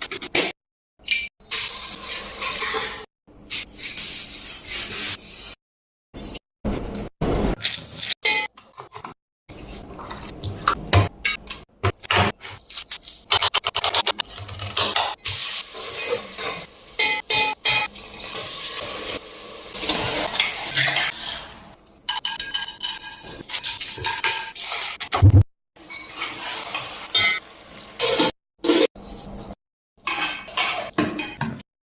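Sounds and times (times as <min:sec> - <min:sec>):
food sizzling: 0:15.2 - 0:17.0, 0:17.9 - 0:20.8.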